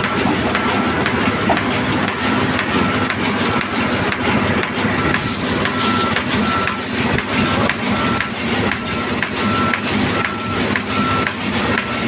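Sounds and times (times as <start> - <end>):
heavy machinery running: 0.0 - 12.0
short warning beeps: 4.7 - 12.0.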